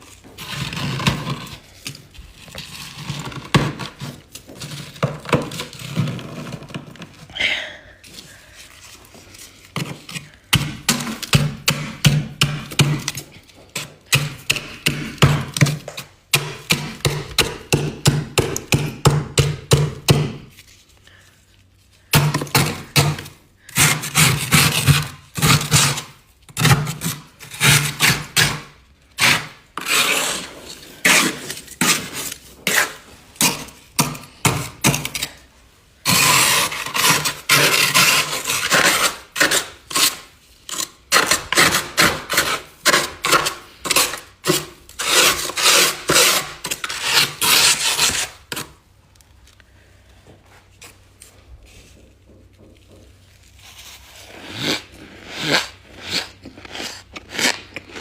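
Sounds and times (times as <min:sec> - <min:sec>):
frost being scraped: 0:23.7 - 0:33.8, 0:36.1 - 0:48.7, 0:53.6 - 0:58.0.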